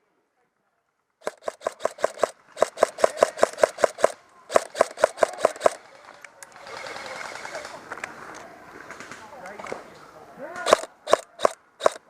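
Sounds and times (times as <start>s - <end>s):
airsoft gun rapid shots: 1.2s - 5.9s, 10.6s - 12.0s.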